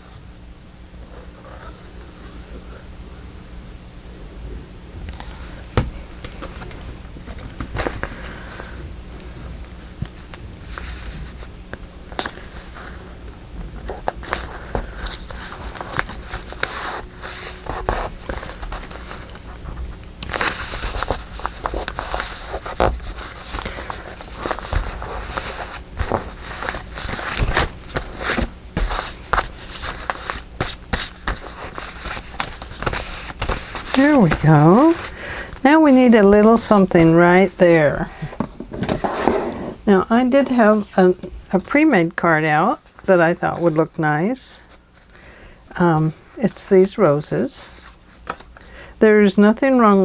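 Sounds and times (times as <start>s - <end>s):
paper rustling and crinkling: 5.1s - 39.2s, 40.5s - 41.8s, 42.6s - 44.0s, 47.4s - 48.7s.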